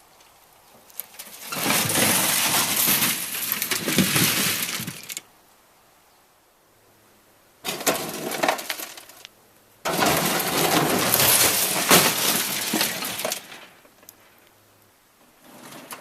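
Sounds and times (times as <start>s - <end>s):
metal toolbox crashing and rattling: 1.4s - 5.2s, 7.7s - 9.1s, 9.9s - 13.7s.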